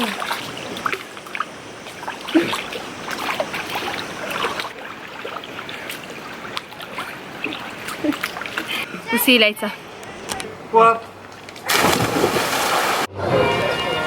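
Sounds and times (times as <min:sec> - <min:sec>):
water dripping: 0:00.0 - 0:08.8
pool water splashing: 0:00.0 - 0:09.9, 0:10.6 - 0:13.1.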